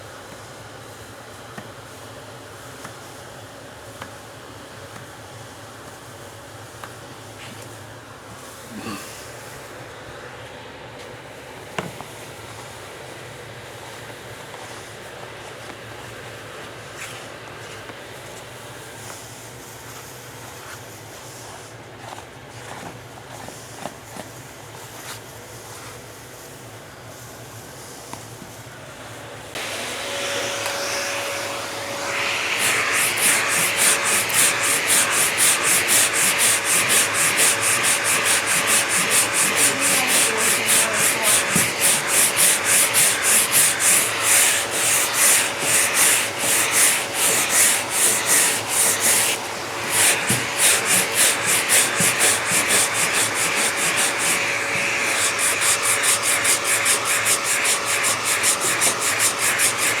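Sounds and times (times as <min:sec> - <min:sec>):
sandpaper rubbing back and forth: 0:30.7 - 1:00.0.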